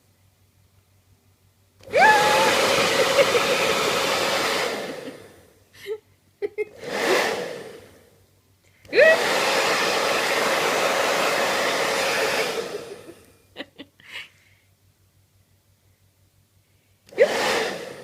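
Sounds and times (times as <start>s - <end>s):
hair dryer motor whine: 1.8s - 5.5s, 6.7s - 8.1s, 8.9s - 13.2s, 17.1s - 18.0s.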